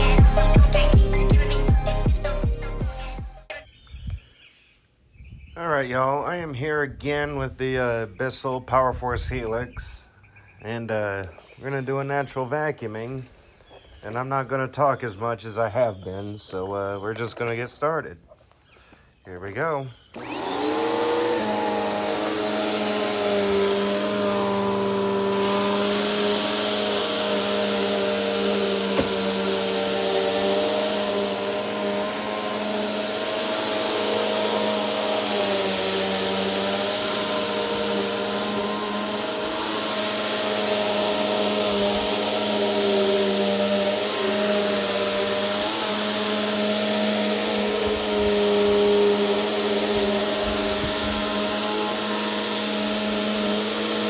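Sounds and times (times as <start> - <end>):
vacuum cleaner running: 0.0 - 1.8, 20.1 - 54.0.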